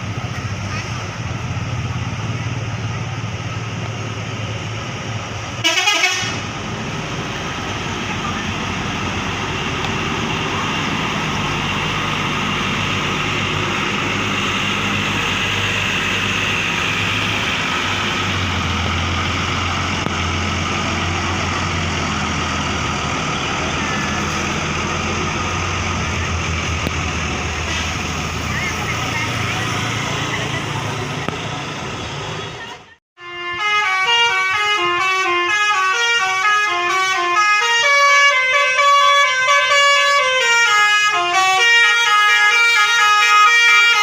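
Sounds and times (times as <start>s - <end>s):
diesel bus engines running: 0.0s - 44.0s
bus air horns tooting: 5.6s - 6.5s, 32.2s - 44.0s.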